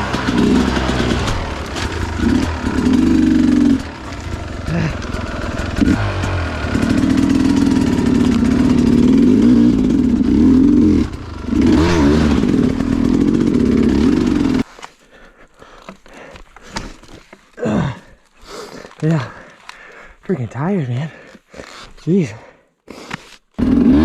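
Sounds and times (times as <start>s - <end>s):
dirt bike engine running: 0.0s - 14.6s, 23.6s - 24.0s.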